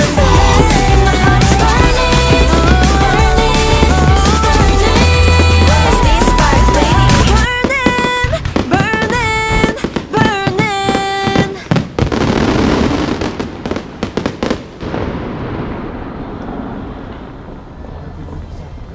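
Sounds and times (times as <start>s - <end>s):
show music: 0.0s - 8.1s
fireworks crackling and popping: 0.0s - 18.8s.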